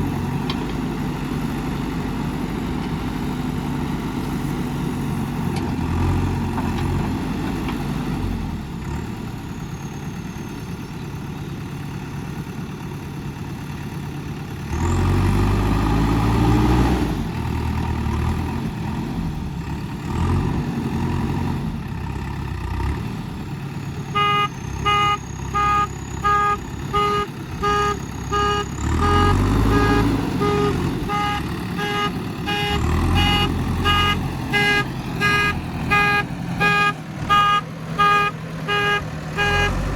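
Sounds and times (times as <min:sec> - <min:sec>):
diesel engine revving: 0:00.0 - 0:39.9
reversing alarm beeping: 0:24.0 - 0:39.8.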